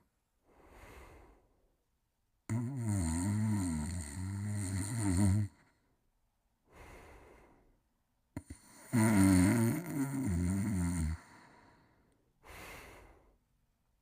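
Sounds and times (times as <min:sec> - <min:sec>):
quiet breath out: 0:00.0 - 0:01.7, 0:06.6 - 0:07.8, 0:10.9 - 0:13.4
person snoring: 0:02.5 - 0:05.7, 0:08.4 - 0:11.9.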